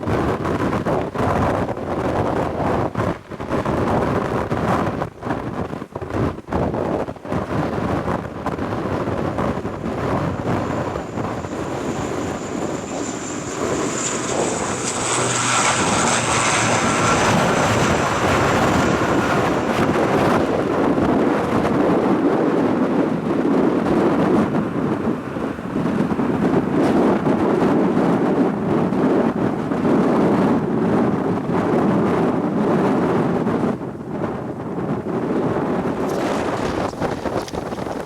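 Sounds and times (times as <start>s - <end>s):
wind buffeting microphone: 0.0s - 38.0s
airliner engines whining: 7.1s - 31.3s, 35.8s - 38.0s.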